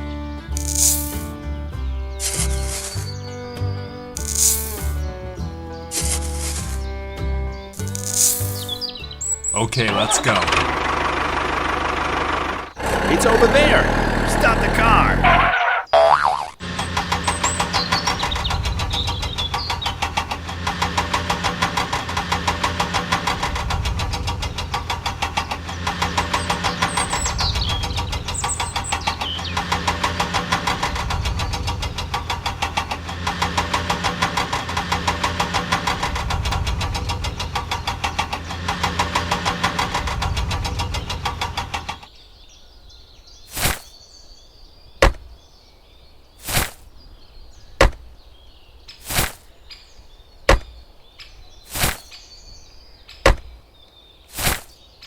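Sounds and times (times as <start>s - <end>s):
tractor engine chugging: 9.6s - 15.7s, 16.6s - 42.1s
sharp knocks: 45.0s - 45.4s, 47.8s - 48.1s, 50.5s - 50.8s, 53.2s - 53.6s.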